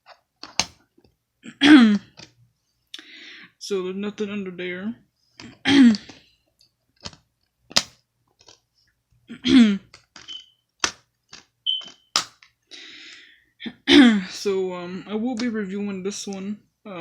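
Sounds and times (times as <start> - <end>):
plastic case clicks and snaps: 0.4 - 0.8, 7.0 - 8.6, 9.9 - 12.6.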